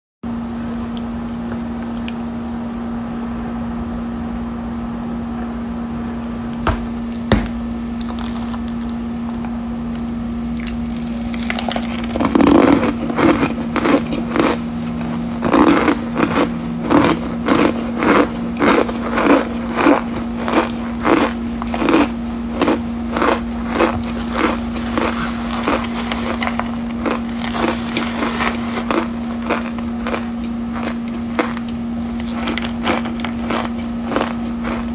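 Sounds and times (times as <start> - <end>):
constant low hum: 0.2 - 34.9
chewing powder crunches: 8.0 - 9.0, 10.0 - 34.9.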